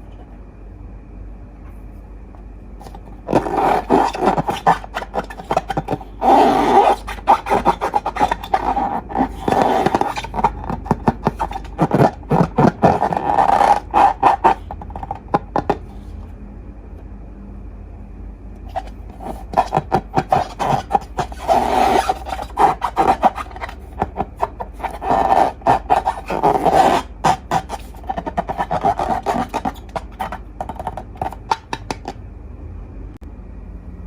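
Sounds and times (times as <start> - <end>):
slime squishing and crackling: 2.9 - 15.9, 18.7 - 32.1.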